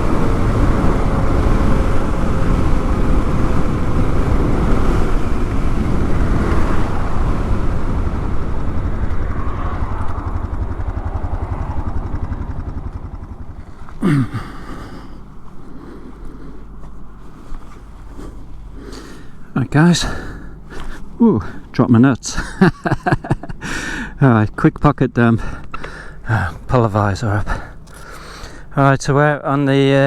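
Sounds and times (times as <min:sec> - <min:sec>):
wind noise: 0:00.0 - 0:21.7
motorcycle engine running: 0:00.0 - 0:21.8
loud sound falling in pitch: 0:06.9 - 0:14.0.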